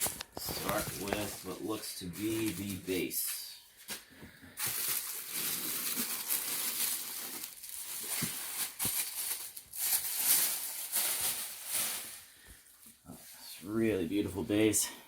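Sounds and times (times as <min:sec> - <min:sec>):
plastic packaging crinkling: 0:00.0 - 0:03.4, 0:04.6 - 0:12.5.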